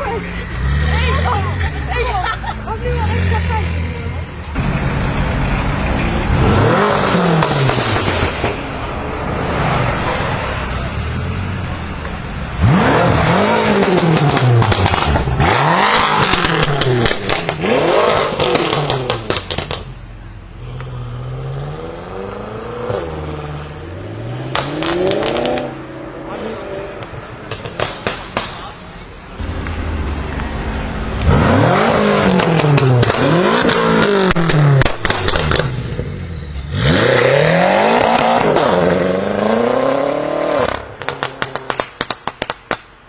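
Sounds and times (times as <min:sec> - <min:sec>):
car engine idling: 0:00.0 - 0:15.4, 0:27.0 - 0:35.7
car engine revving: 0:00.0 - 0:20.0, 0:20.6 - 0:41.8
exhaust crackles and pops: 0:06.5 - 0:08.9, 0:12.0 - 0:20.0, 0:26.9 - 0:36.2, 0:40.6 - 0:43.0.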